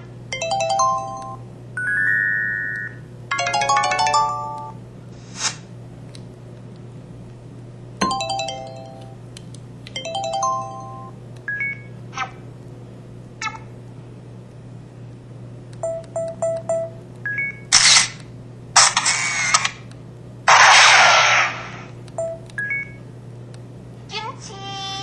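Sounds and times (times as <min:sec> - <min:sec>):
steady low hum: 0:00.0 - 0:25.0
noisy electronic burst: 0:20.5 - 0:21.9.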